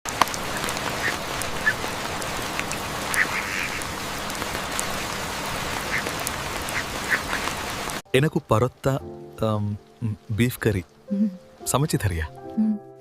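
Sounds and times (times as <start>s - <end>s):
water drips: 0.1s - 12.8s
rain falling: 0.1s - 13.0s
ducks quacking: 3.1s - 3.9s, 5.8s - 7.6s.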